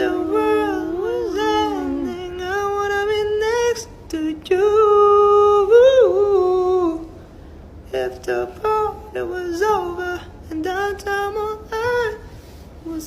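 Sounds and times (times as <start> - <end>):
person humming a melody: 0.0 - 2.6.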